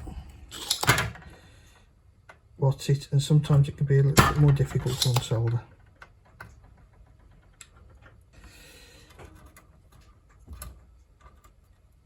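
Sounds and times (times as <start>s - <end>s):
small tools clicking and tapping: 4.7s - 8.2s.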